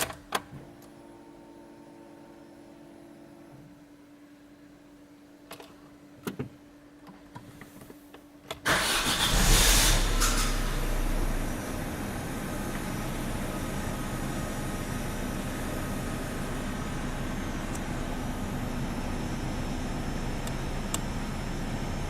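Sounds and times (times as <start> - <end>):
car engine starting and idling: 8.6 - 22.0
steady hum: 9.3 - 22.0.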